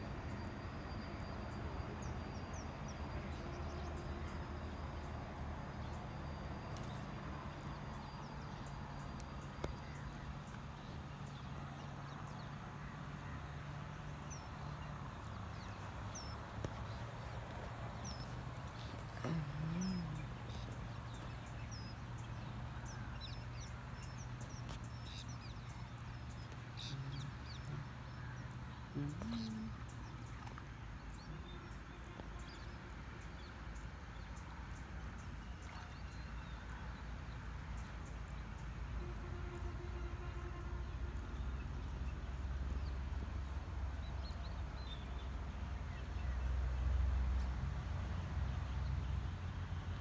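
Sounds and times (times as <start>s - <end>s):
steady low hum: 3.3s - 31.7s.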